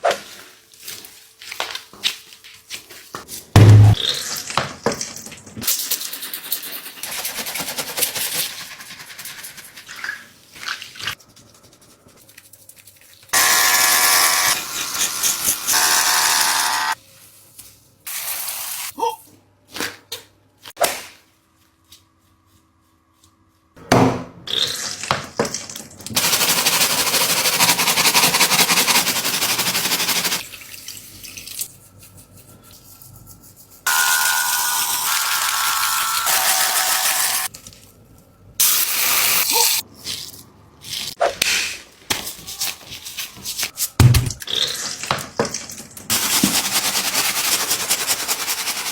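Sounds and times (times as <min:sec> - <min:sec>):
rubbing sounds: 0:26.2 - 0:30.4
running water hissing: 0:26.2 - 0:30.5.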